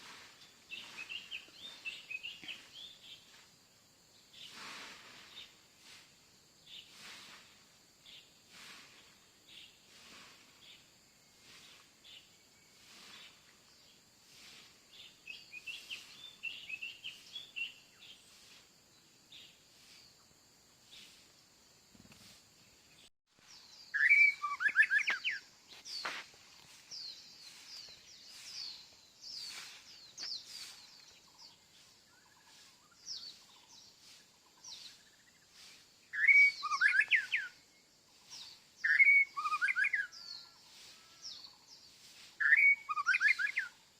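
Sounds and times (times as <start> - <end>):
birds chirping: 0.0 - 3.4, 14.9 - 20.2, 22.0 - 43.8
rapid birdsong bursts: 22.9 - 43.8.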